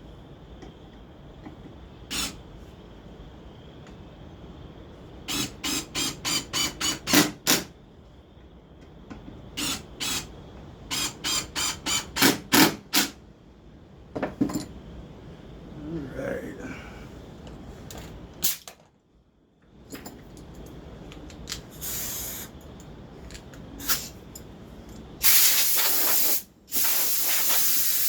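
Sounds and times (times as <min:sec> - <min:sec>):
pneumatic nailer firing into wood: 0:05.3 - 0:07.7, 0:10.9 - 0:13.2, 0:18.4 - 0:18.8.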